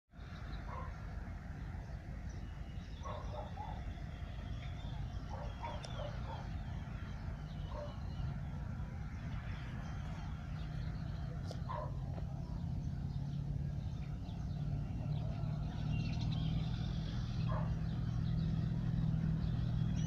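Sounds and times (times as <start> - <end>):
steady low rumble: 0.2 - 20.0
faint bird chirps: 2.2 - 8.4.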